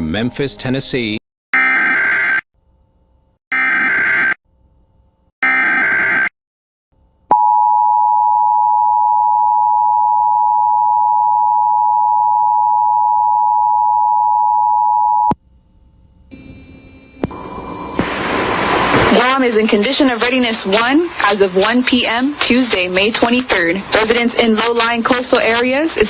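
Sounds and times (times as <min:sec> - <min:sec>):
hiss of noise: 0:17.3 - 0:21.8.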